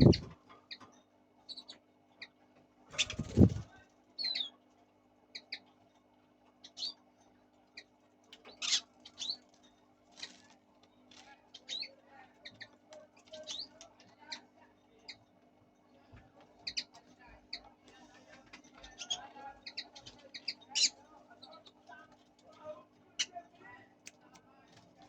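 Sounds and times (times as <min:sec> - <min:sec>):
lovebirds chirping: 0:00.0 - 0:00.4, 0:03.0 - 0:03.7.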